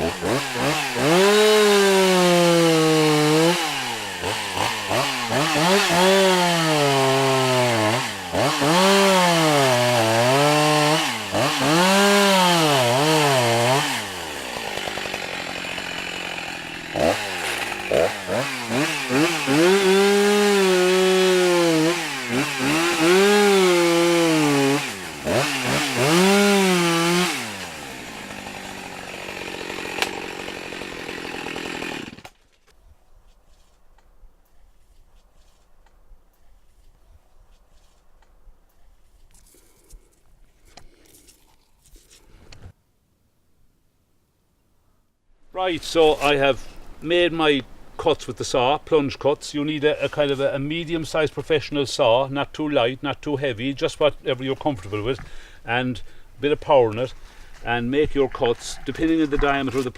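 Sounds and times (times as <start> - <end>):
chainsaw cutting wood: 0.0 - 32.6, 54.5 - 59.9.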